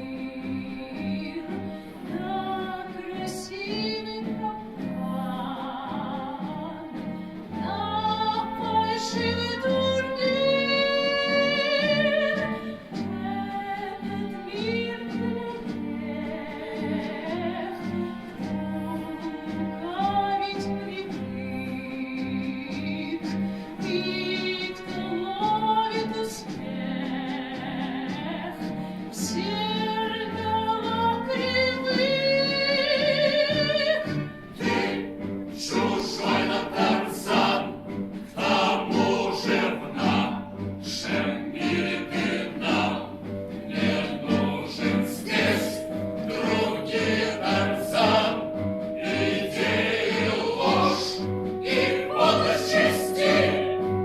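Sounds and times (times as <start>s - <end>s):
voices singing long notes: 31.1s - 54.0s
drum beat: 35.7s - 53.3s.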